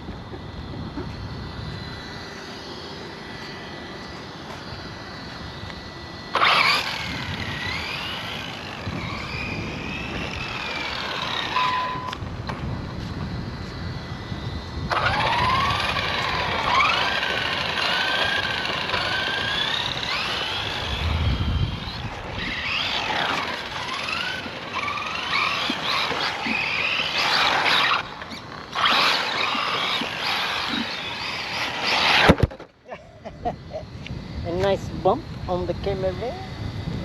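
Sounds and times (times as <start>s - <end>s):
electric motor whining: 0.0s - 37.0s.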